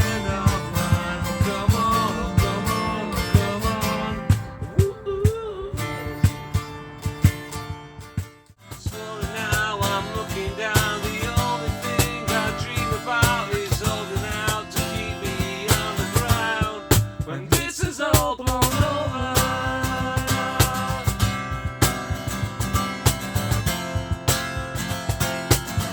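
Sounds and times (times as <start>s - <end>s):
rock song with singing: 0.0s - 6.6s, 8.7s - 21.5s.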